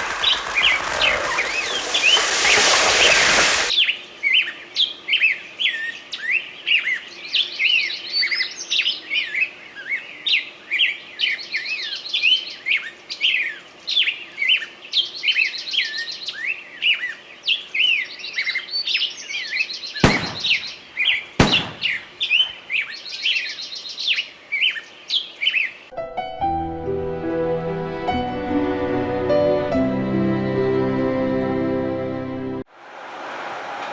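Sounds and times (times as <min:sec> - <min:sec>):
small birds chirping: 0:00.0 - 0:25.9.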